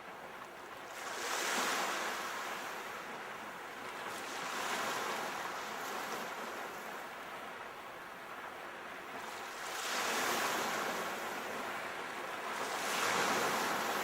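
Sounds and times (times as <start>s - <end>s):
sea waves washing in: 9.2s - 14.0s.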